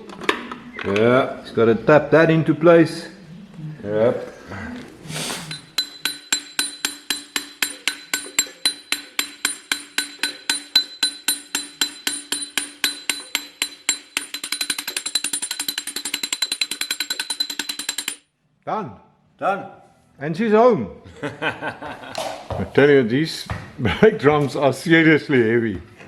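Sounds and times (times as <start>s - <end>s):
hammer on metal ringing: 5.5s - 18.2s.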